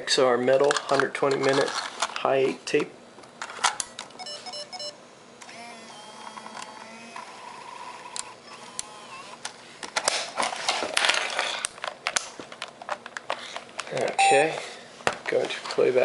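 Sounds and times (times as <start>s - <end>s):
small motor whirring: 5.5s - 9.3s
short electronic beeps: 14.2s - 14.6s.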